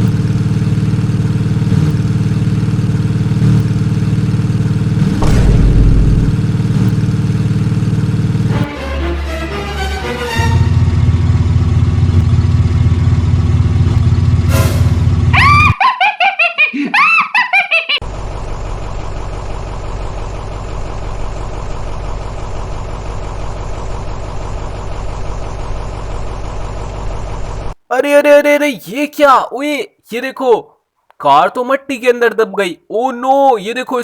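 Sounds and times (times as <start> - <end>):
low engine-like drone: 0.0 - 15.5.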